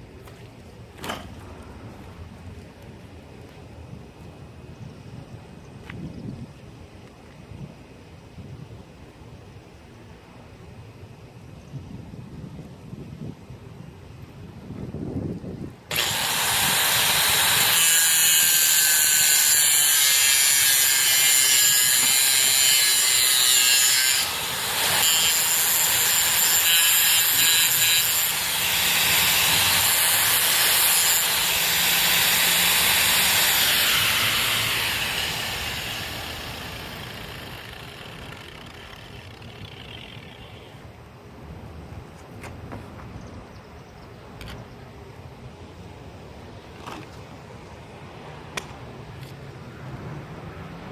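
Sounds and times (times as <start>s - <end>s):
angle grinder cutting steel: 15.9s - 40.6s.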